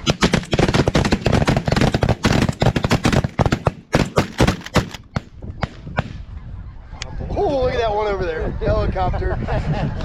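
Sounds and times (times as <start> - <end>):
shotguns firing: 0.0 - 6.1.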